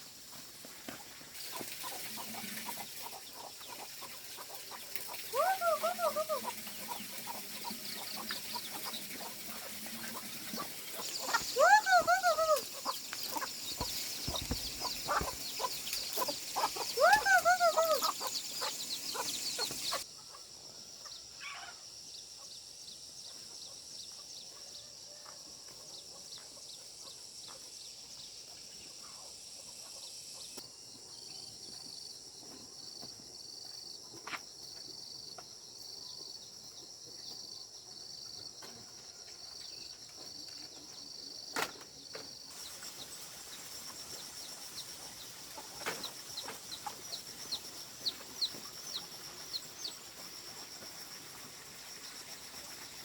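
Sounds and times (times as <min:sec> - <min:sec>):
chickens clucking: 0:00.8 - 0:21.8, 0:42.5 - 0:50.3.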